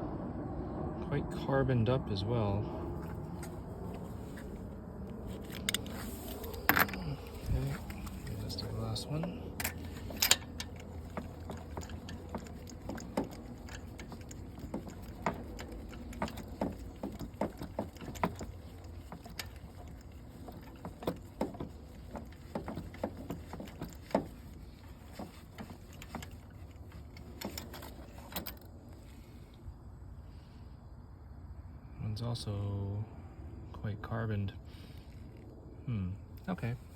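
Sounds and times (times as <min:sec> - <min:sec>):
steady low hum: 0:00.0 - 0:36.9
tools clicking and tapping: 0:05.6 - 0:28.6.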